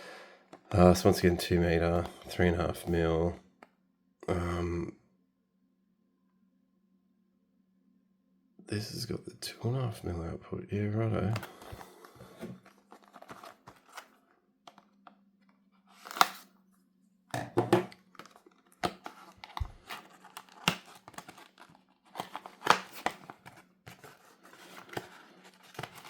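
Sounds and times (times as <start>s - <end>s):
packaging tearing and crinkling: 12.7s - 14.1s, 15.9s - 16.5s, 18.2s - 26.0s.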